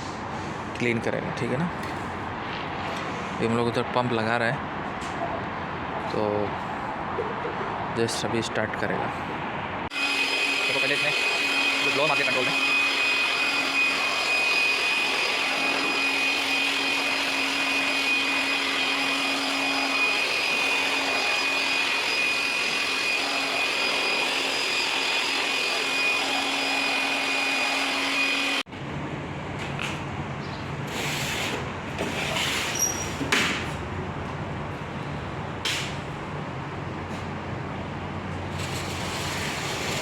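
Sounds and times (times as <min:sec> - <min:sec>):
electric air blower whining: 0:09.9 - 0:28.7.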